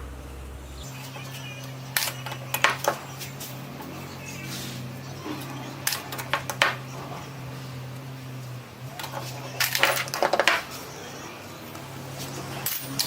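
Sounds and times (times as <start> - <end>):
low hum: 0.0 - 13.0
metal parts clinking: 9.0 - 10.6, 12.6 - 13.0.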